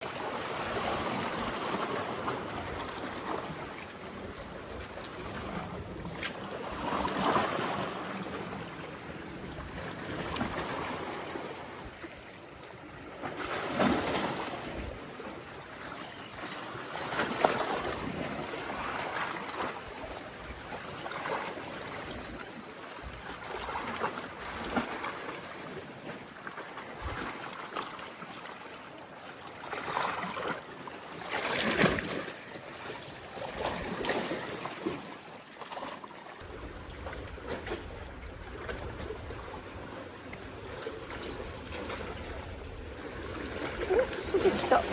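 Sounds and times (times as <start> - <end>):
waves splashing among concrete blocks: 0.0 - 44.9
wind on microphone: 36.4 - 44.9.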